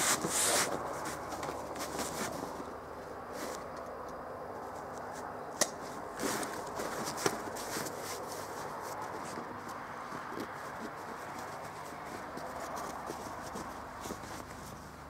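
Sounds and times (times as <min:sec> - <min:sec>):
fabric bag rustling: 0:06.1 - 0:15.0.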